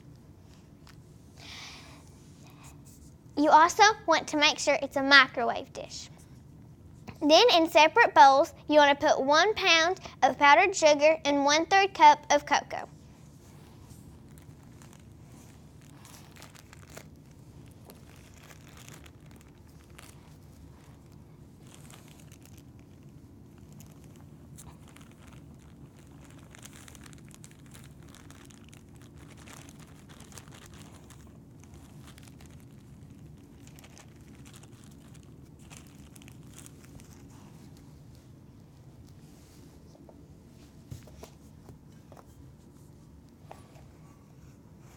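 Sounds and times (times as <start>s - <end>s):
steady low hum: 0.0s - 44.9s
food packaging rustling: 13.3s - 37.9s.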